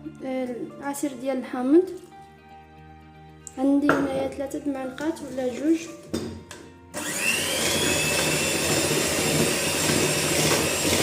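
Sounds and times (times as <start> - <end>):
electric mixer motor whine: 6.9 - 11.0.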